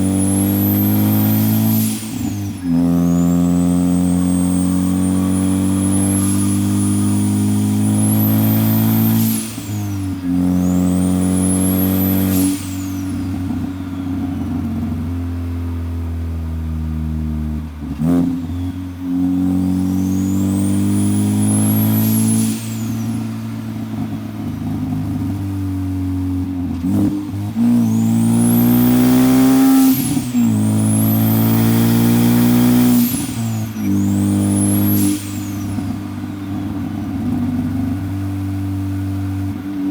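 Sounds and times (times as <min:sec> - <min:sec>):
turbo whistle: 0:00.0 - 0:14.6, 0:19.5 - 0:23.9, 0:27.6 - 0:37.0
car engine accelerating: 0:00.0 - 0:39.9.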